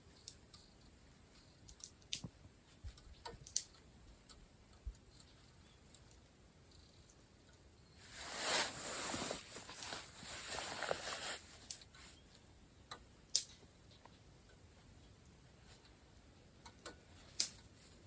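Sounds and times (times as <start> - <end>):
rustling and handling noise: 8.0 - 12.4.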